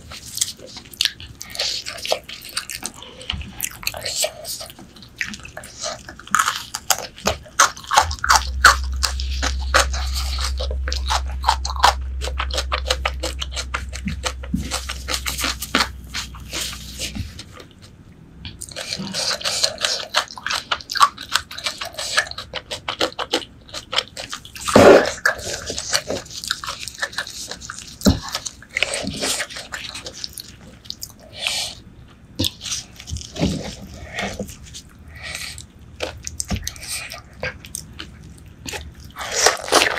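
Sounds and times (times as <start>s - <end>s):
wet chewing and biting: 0.0s - 39.9s
low hum: 6.9s - 18.6s.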